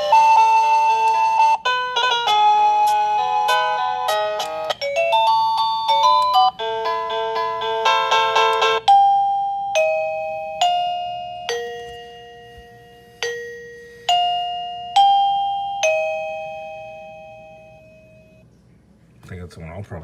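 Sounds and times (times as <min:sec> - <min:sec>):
doorbell-like chime melody: 0:00.0 - 0:18.4.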